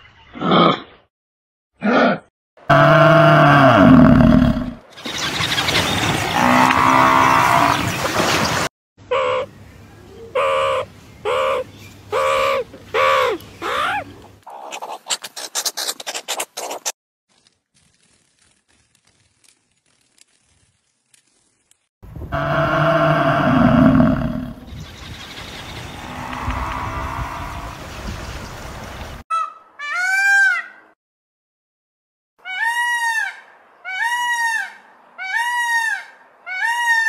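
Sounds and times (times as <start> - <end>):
animal calls: 9.1 - 9.5, 10.2 - 16.9.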